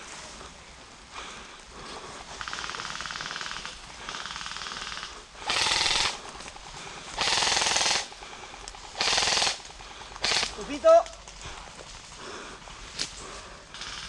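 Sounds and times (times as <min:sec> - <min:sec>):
airsoft guns firing full auto: 0:02.5 - 0:06.2, 0:07.2 - 0:08.2, 0:08.8 - 0:10.9, 0:13.7 - 0:14.0.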